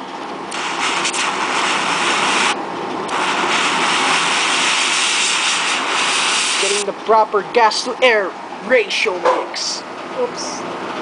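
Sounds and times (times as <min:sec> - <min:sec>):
torch hissing: 0:00.5 - 0:06.9.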